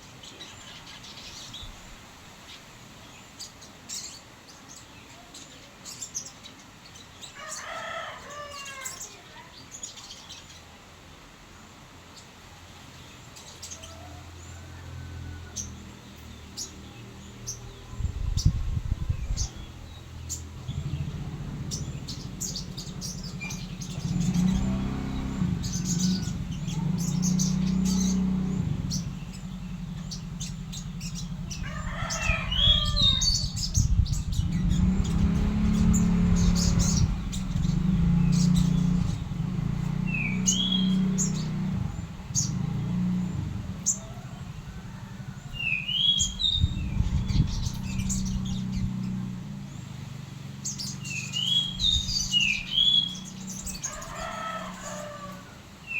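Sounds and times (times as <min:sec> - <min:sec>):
songbird chirping: 0:00.0 - 0:55.9
loud low rumble: 0:17.9 - 0:44.7, 0:46.2 - 0:49.7.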